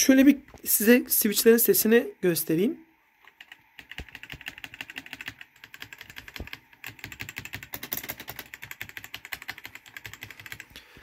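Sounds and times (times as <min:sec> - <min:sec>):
mechanical keyboard clicking: 0:03.3 - 0:10.7.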